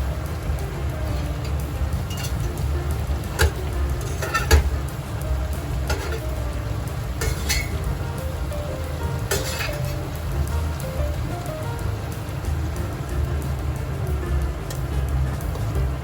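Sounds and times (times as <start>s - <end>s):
background music: 0.0s - 16.0s
food sizzling in a frying pan: 0.0s - 16.0s
utensil clinking against pan: 0.8s - 4.8s, 5.8s - 6.4s, 7.1s - 8.0s, 9.1s - 10.2s.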